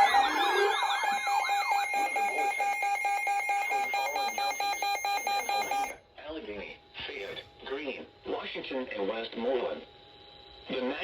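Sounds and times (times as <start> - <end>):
steady electronic tone: 0.0 - 5.9
wavering siren sweeps: 0.0 - 5.9
pulsing electronic alarm: 0.0 - 6.0.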